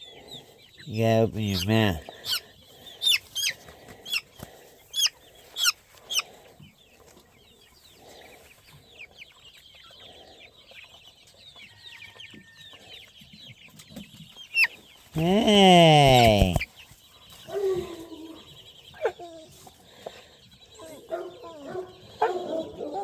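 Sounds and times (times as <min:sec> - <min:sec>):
chickens clucking: 0:00.0 - 0:23.0
faint peeping: 0:00.0 - 0:23.0
chicken squawking: 0:01.0 - 0:04.3, 0:04.9 - 0:06.3, 0:14.6 - 0:16.7.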